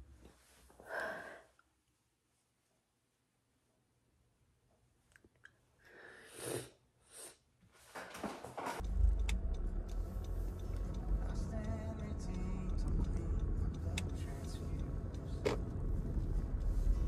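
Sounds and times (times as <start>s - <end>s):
steady low rumble: 8.8s - 17.0s.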